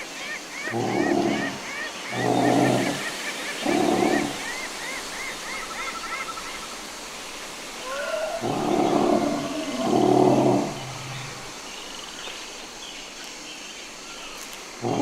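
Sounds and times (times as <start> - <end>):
deep honking dinosaur calls: 0.7 - 4.5.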